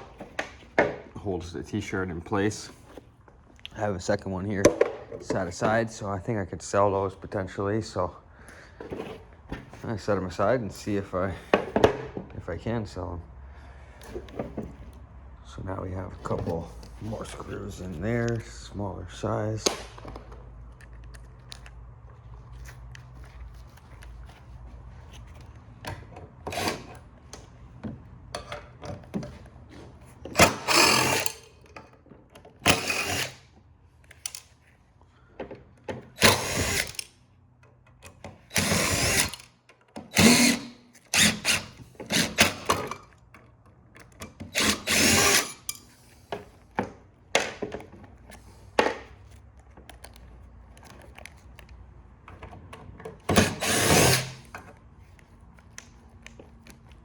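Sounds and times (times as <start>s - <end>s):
small handling clicks: 19.6s - 24.4s, 34.0s - 34.7s, 47.4s - 52.8s
power drill backing out screws: 26.5s - 27.0s, 30.2s - 31.7s, 32.5s - 33.4s, 36.0s - 37.1s, 38.1s - 43.1s, 44.0s - 46.3s, 53.2s - 54.6s.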